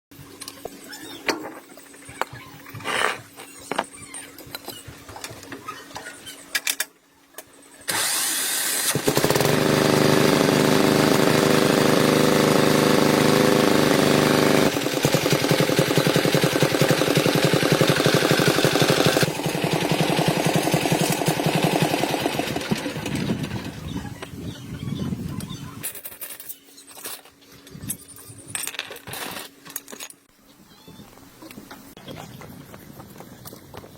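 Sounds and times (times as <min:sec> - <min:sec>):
tractor engine chugging: 0:09.0 - 0:24.1.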